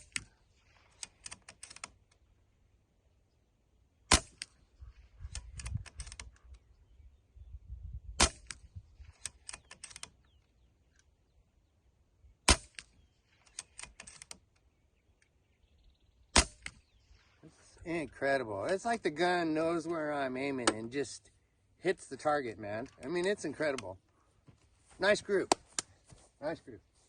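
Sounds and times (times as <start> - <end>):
air rifle shots: 4.1 - 4.6, 8.2 - 8.6, 12.4 - 12.9, 16.3 - 17.2.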